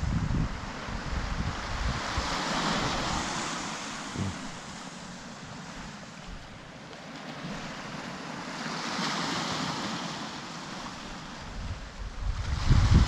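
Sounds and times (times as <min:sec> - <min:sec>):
strong wind: 0:00.0 - 0:06.6, 0:11.3 - 0:13.0
sea surf breaking on beach: 0:00.0 - 0:13.0.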